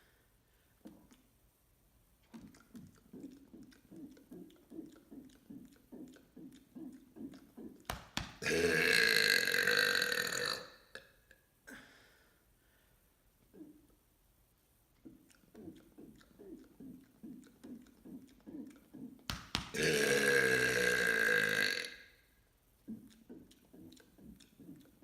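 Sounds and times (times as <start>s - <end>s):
man burping: 8.4s - 11.2s, 19.7s - 22.1s.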